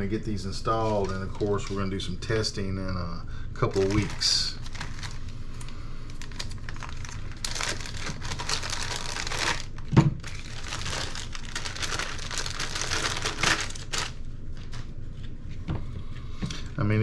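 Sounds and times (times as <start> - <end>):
plastic packaging crinkling: 0.6 - 2.1, 3.6 - 15.2.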